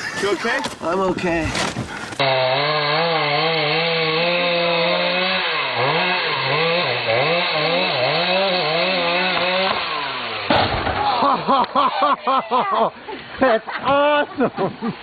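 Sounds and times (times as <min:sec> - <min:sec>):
chainsaw revving: 0:02.2 - 0:11.6.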